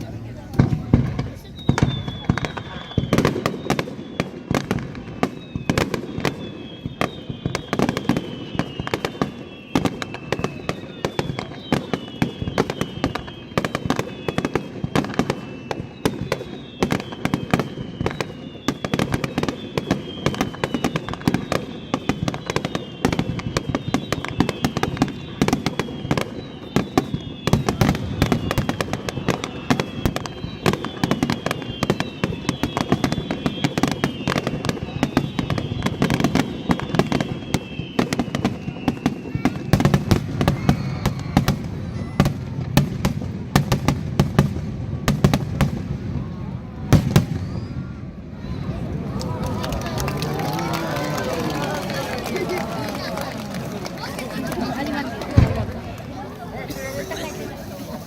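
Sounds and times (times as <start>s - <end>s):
firework shells bursting and crackling: 0.5s - 45.8s
falling firework whistles: 0.6s - 58.0s.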